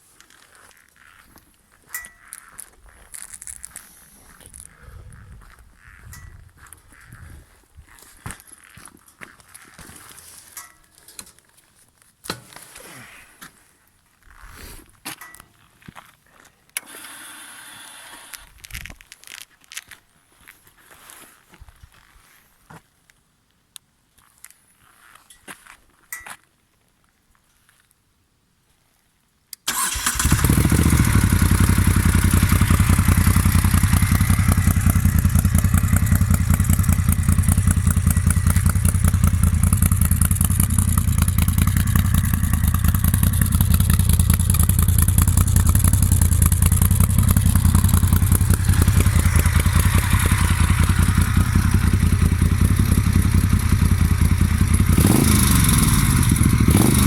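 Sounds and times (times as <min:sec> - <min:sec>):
motorcycle engine starting: 0:29.7 - 0:57.0
motorcycle engine idling: 0:29.8 - 0:57.0.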